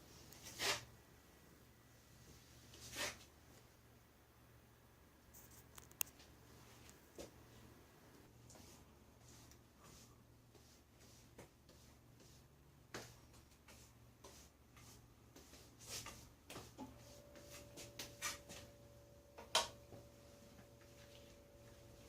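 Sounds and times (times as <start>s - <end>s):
trowel scraping a wall: 0.5s - 0.9s.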